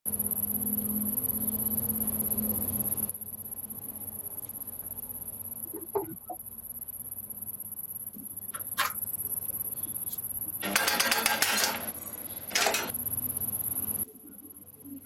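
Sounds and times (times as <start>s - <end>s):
high-pitched whine: 0.1s - 15.0s
rapid metallic rattle: 10.6s - 13.0s.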